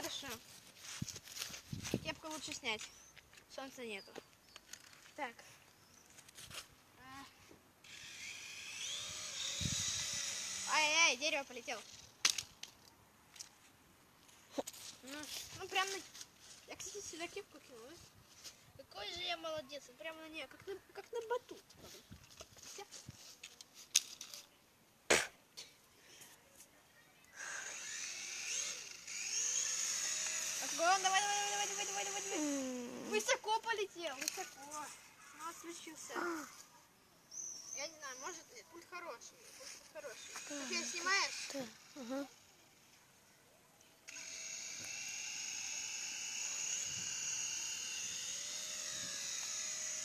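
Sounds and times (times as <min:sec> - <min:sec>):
toy helicopter motor whine: 0:07.8 - 0:12.1, 0:27.3 - 0:33.4, 0:40.0 - 0:42.8, 0:44.1 - 0:50.0.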